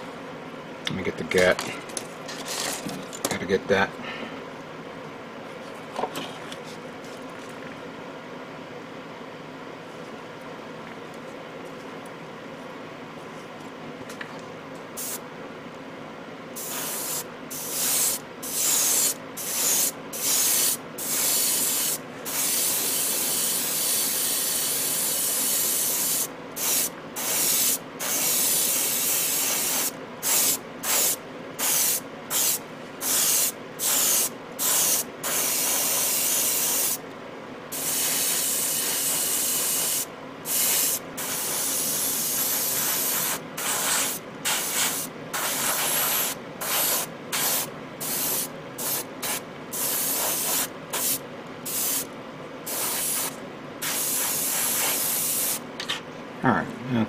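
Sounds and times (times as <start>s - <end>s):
airbrush spraying hiss: 15.0s - 15.2s, 16.6s - 37.0s, 37.7s - 52.1s, 52.7s - 55.6s.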